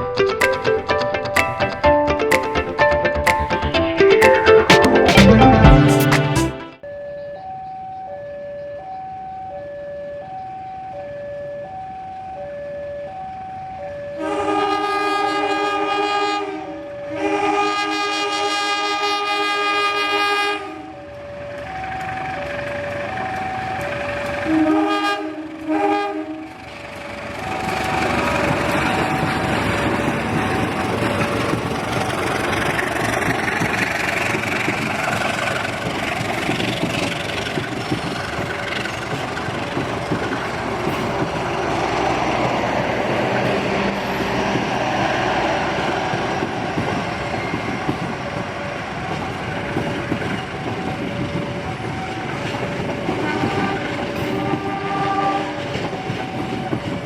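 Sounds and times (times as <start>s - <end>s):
loud train horn chord: 14.2s - 20.9s, 24.4s - 26.6s, 53.2s - 55.7s
train running past: 14.2s - 57.0s
wheels clicking over rail joints: 26.6s - 45.0s.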